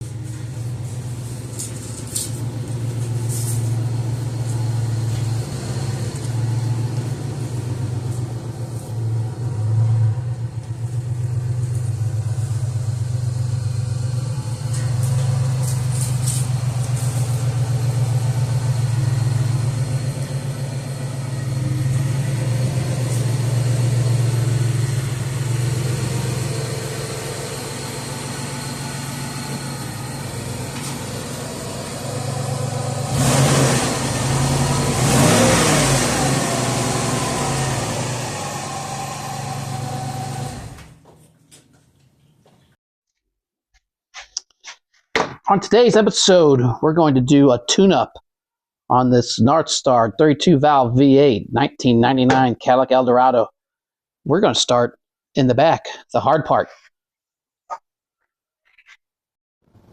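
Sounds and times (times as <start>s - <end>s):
car engine revving: 0.0s - 40.9s.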